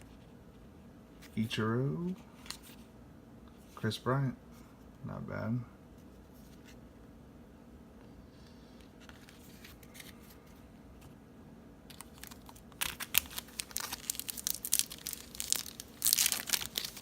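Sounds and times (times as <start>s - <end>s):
wrapper tearing and crinkling: 11.9s - 17.0s.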